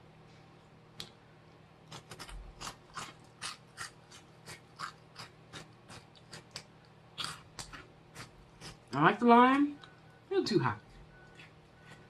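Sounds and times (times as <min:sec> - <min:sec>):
crunchy snack being chewed: 0:01.9 - 0:09.0, 0:10.9 - 0:12.0.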